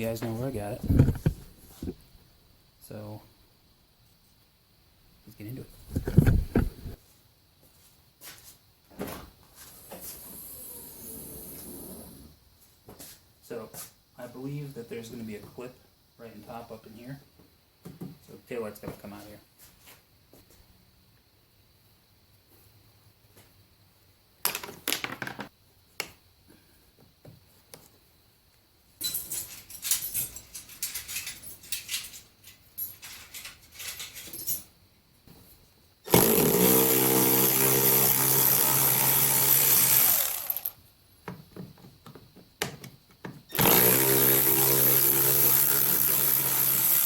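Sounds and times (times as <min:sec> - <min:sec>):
tool and fasteners rattling: 0:00.0 - 0:01.9, 0:05.8 - 0:07.0, 0:29.0 - 0:34.7
cordless power driver spinning: 0:38.2 - 0:40.8, 0:43.5 - 0:47.0.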